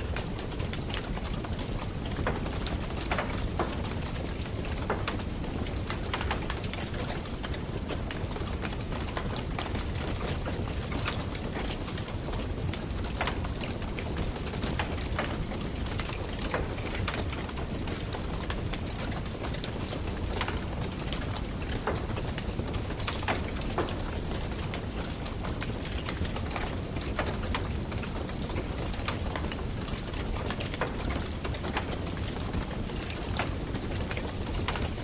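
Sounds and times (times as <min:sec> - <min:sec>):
campfire crackling and popping: 0:00.1 - 0:35.0.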